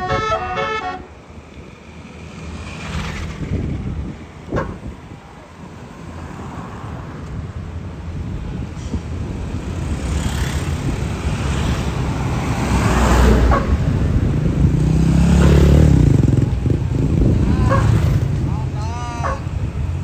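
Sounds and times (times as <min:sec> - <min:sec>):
bus diesel engine passing: 0:00.0 - 0:20.0.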